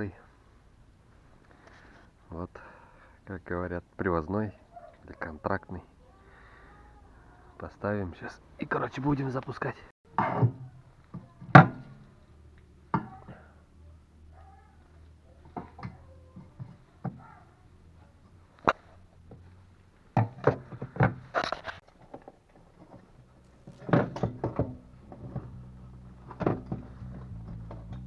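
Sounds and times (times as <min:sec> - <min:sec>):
car parts and tools clunking: 0:10.1 - 0:12.1, 0:12.9 - 0:13.5, 0:15.4 - 0:17.4, 0:18.5 - 0:28.0.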